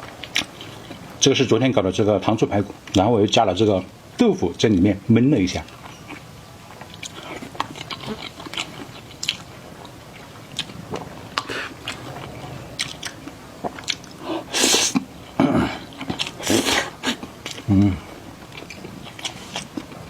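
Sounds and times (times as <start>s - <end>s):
mouth clicks and crackles: 5.6s - 20.0s
wet chewing and biting: 5.7s - 15.1s, 15.7s - 20.0s.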